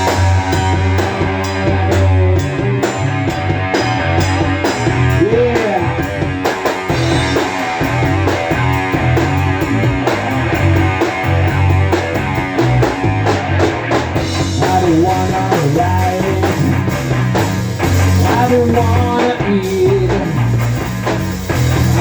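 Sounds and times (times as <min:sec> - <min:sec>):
rock band playing: 0:00.0 - 0:22.0
person singing: 0:05.1 - 0:06.3, 0:14.6 - 0:16.8, 0:18.2 - 0:20.6.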